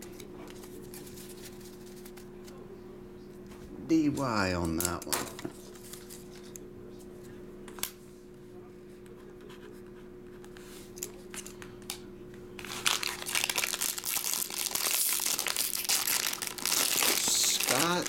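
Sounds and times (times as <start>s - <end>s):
foil wrapper tearing and crinkling: 12.6s - 18.0s.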